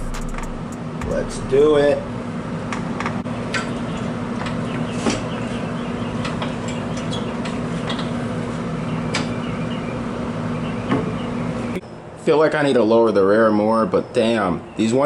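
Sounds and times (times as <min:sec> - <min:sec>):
low machine hum: 0:00.0 - 0:04.0.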